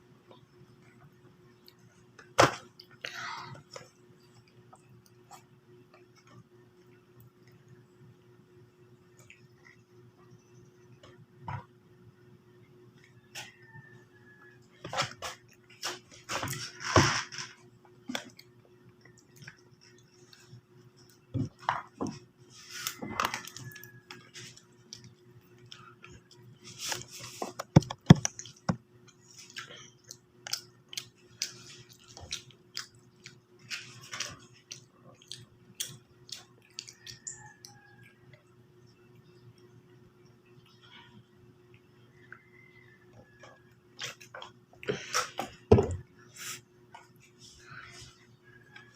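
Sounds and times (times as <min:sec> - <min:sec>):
faint steady hum: 0:00.0 - 0:48.9
chewing: 0:18.1 - 0:27.6, 0:28.3 - 0:38.5, 0:41.7 - 0:45.4.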